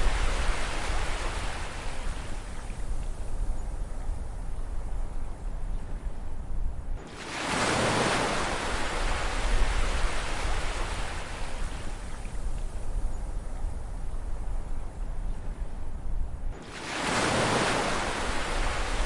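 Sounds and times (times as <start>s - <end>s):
ocean wave breaking: 7.0s - 11.6s, 16.6s - 19.0s.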